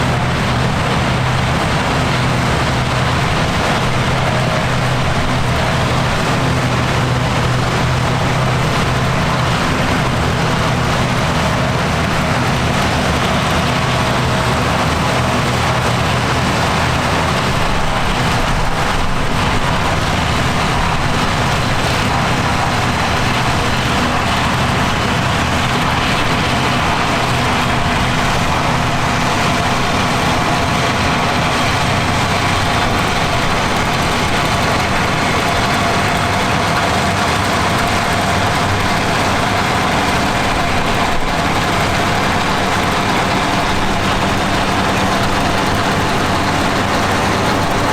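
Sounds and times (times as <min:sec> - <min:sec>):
rushing mechanical noise: 0:00.0 - 0:47.9
tractor engine running: 0:00.0 - 0:47.9.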